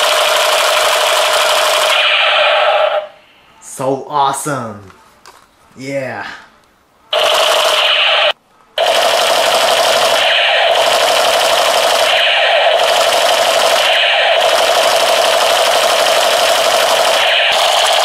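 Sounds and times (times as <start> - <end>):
toy machine gun rattling buzz: 0.0 - 1.9, 7.2 - 7.9, 8.8 - 18.0.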